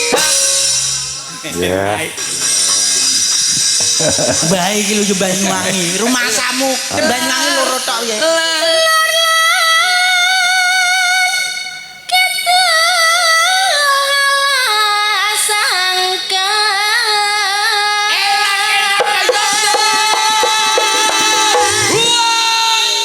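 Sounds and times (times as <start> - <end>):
band accompaniment: 0.0 - 1.4, 18.9 - 23.0
woman singing with vibrato: 6.9 - 23.0
quick drum strokes: 18.9 - 22.6.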